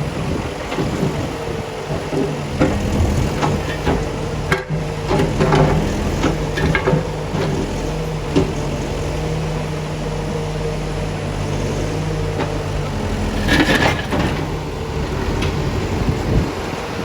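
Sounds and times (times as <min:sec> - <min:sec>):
diesel engine running: 0:00.0 - 0:17.0
clattering impacts: 0:00.7 - 0:09.3, 0:12.3 - 0:16.2.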